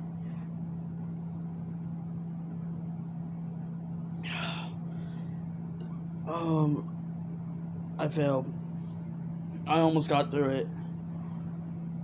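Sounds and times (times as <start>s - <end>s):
steady low hum: 0.0s - 12.0s
breathy exhale: 4.2s - 5.4s.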